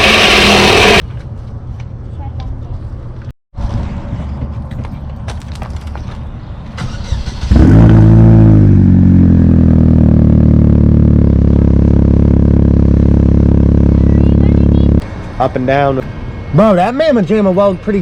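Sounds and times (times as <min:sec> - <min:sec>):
car engine starting and revving: 0:06.8 - 0:15.0
car engine idling: 0:09.5 - 0:15.0.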